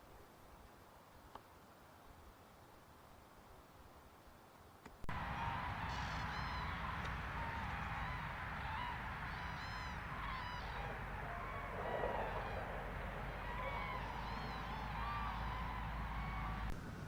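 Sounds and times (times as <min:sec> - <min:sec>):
birds calling: 0:05.1 - 0:16.7
steady rushing noise: 0:05.1 - 0:17.0.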